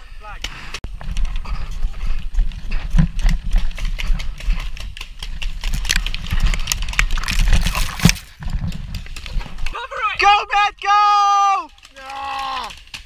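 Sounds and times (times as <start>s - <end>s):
running footsteps: 0.5s - 9.9s.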